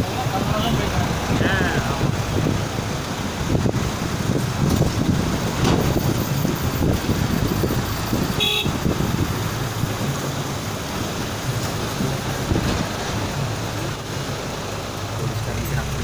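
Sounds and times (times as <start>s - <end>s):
rain rushing: 0.0s - 16.0s
traffic noise: 0.0s - 16.0s
wind buffeting microphone: 0.0s - 16.0s
vehicle horn toot: 8.3s - 8.8s.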